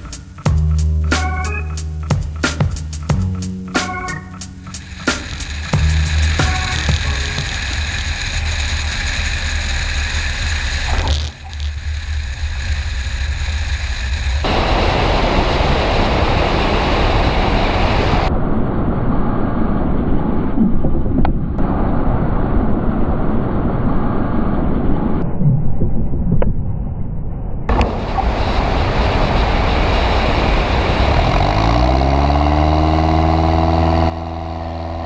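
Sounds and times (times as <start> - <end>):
airflow rush: 0.0 - 11.0, 11.8 - 18.3, 27.7 - 32.4
propeller airplane engine drone: 0.0 - 18.4, 27.7 - 35.0.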